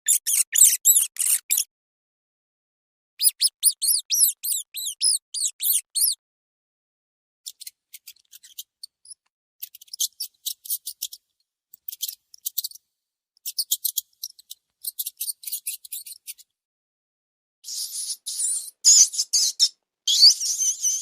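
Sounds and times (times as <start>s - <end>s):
rat ticks and squeaks: 0.0s - 1.7s, 3.2s - 6.2s, 7.5s - 12.8s, 13.4s - 16.6s.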